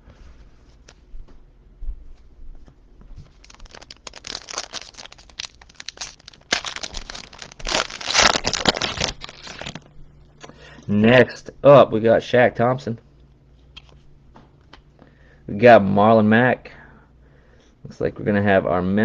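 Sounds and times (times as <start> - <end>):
foil wrapper tearing and crinkling: 3.3 - 9.9.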